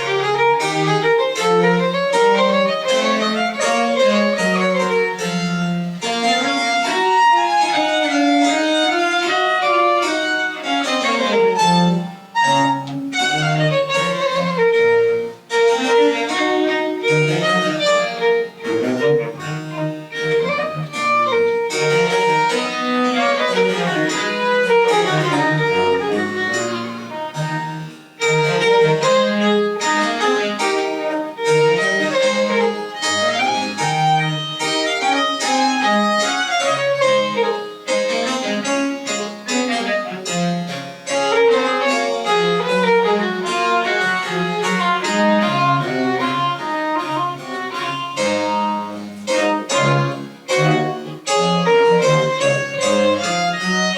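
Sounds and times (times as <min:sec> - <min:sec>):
violin melody: 0:00.0 - 0:53.9.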